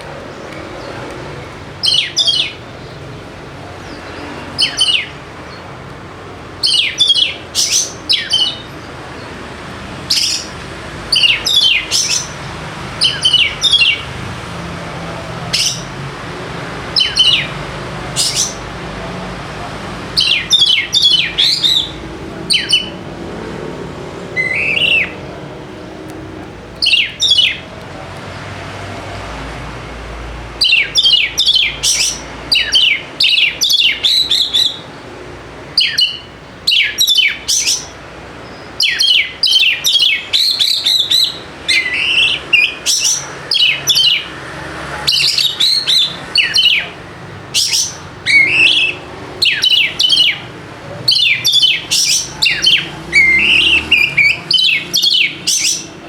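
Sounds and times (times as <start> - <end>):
bird calling with downward notes: 0.0 - 3.0, 3.8 - 5.2, 6.6 - 8.9, 10.1 - 12.4, 13.0 - 14.1, 15.4 - 16.0, 16.8 - 18.7, 20.1 - 23.3, 24.3 - 25.5, 26.7 - 27.8, 30.6 - 35.0, 35.7 - 44.4, 45.0 - 56.0.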